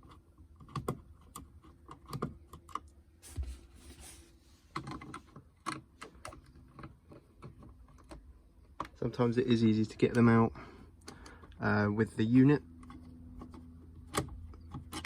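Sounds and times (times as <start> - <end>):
scraping rustle: 3.2 - 5.2.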